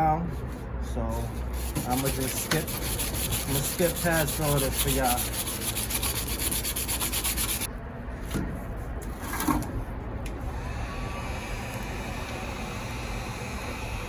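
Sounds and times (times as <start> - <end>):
sandpaper strokes on plastic: 1.2 - 7.7.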